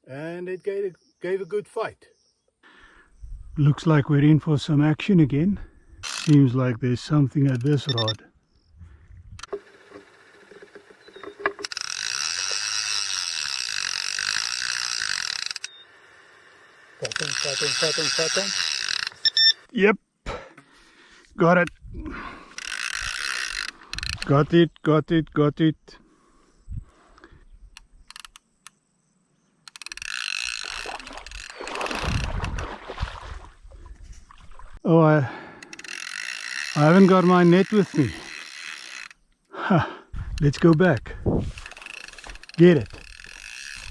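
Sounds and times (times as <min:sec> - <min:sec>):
fishing reel ratchet clicking: 0:06.0 - 0:06.4, 0:09.4 - 0:15.8, 0:17.0 - 0:19.7, 0:22.5 - 0:24.3, 0:29.7 - 0:31.6, 0:35.6 - 0:39.2, 0:40.4 - 0:43.9.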